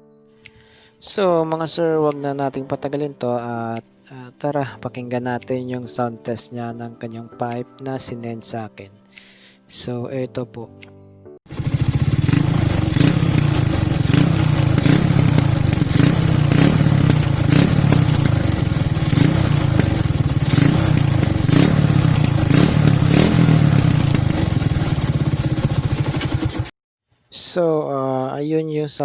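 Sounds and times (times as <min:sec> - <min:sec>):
motorcycle engine running: 0:11.5 - 0:26.7.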